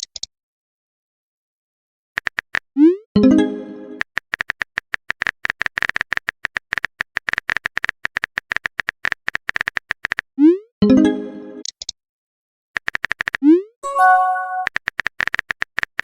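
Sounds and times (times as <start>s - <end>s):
phone keyboard typing clicks: 12.8s - 13.4s, 14.1s - 16.0s
pitched chime: 13.8s - 14.7s.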